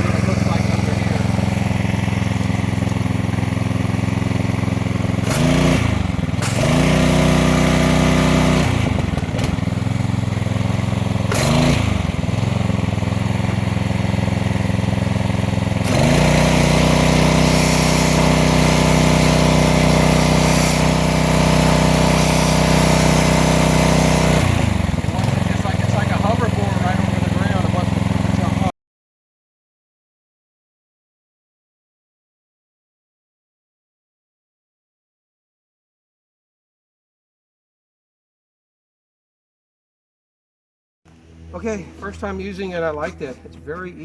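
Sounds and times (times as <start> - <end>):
pressure washer engine running: 0.0 - 28.7, 41.1 - 44.0
high-pressure water spray hiss: 6.4 - 7.0, 15.8 - 24.6.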